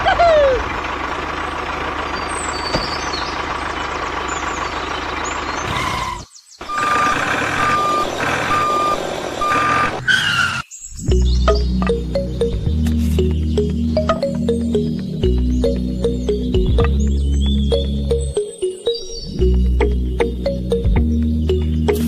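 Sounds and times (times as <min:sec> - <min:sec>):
truck engine whine: 0:00.0 - 0:22.0
reversing alarm beeps: 0:06.7 - 0:10.0.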